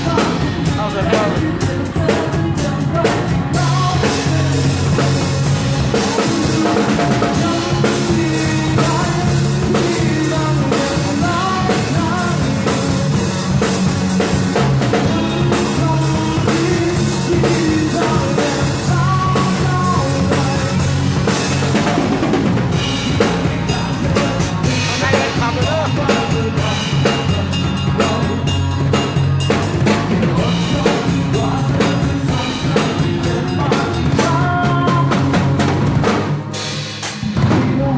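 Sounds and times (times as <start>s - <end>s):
live rock band playing: 0.0s - 37.9s
loud steady drums: 0.0s - 37.9s.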